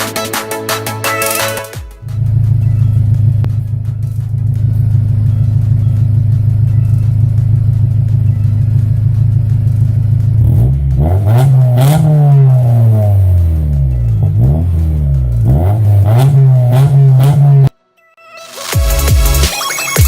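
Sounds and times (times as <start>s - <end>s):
car engine idling and revving: 1.9s - 17.8s.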